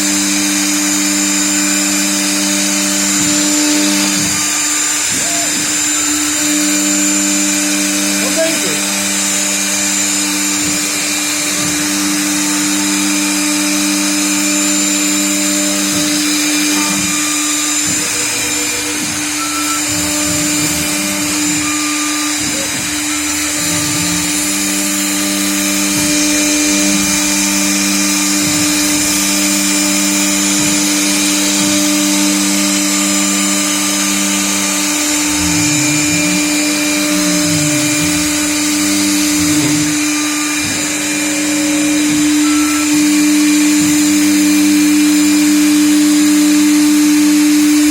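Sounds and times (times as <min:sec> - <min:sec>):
router spindle whine: 0:00.0 - 0:47.9
motor tone gliding in pitch: 0:16.4 - 0:47.9.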